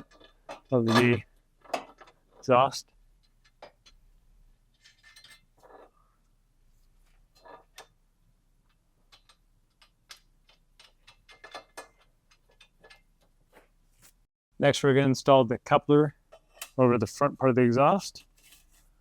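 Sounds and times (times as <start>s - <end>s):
metal parts clinking: 4.7s - 5.8s.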